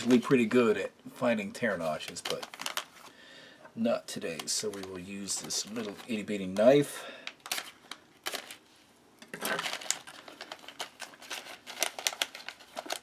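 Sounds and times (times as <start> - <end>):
snack pouch crackling and rustling: 1.9 - 3.1, 4.2 - 8.7, 9.3 - 13.0.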